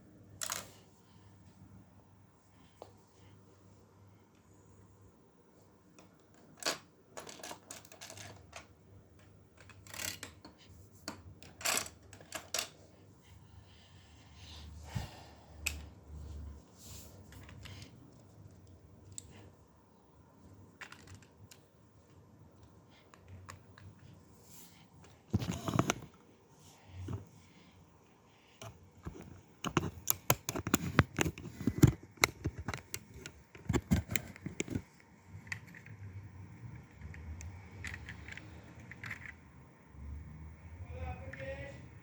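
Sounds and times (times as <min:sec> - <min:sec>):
plastic pieces clicking and clattering: 0:06.0 - 0:12.7, 0:20.8 - 0:21.7.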